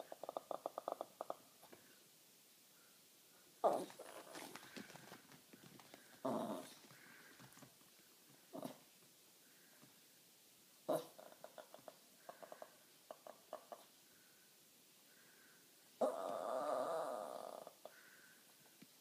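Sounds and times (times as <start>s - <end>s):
small dog growling: 0.0s - 1.5s, 3.6s - 4.9s, 6.2s - 7.2s, 8.5s - 8.9s, 10.9s - 13.9s, 16.0s - 17.9s.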